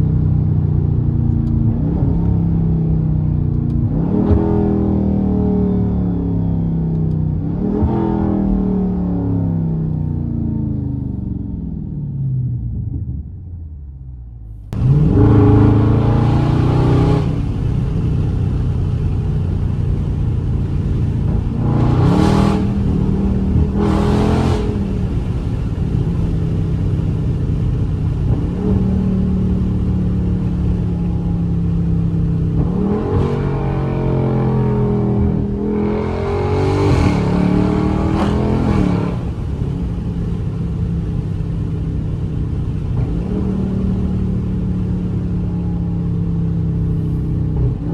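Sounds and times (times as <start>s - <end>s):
car engine revving: 0.0s - 47.9s.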